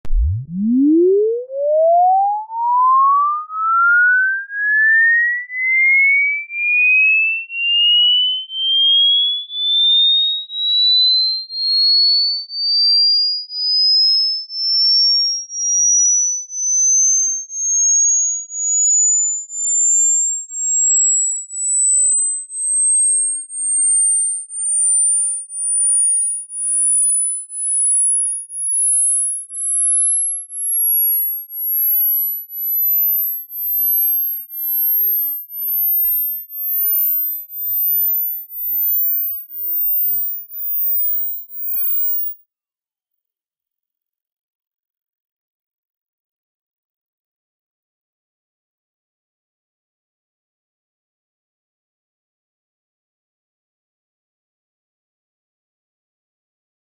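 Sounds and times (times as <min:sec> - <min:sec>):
rising sine-wave tone sweep: 0:00.0 - 0:13.0, 0:13.7 - 0:42.4.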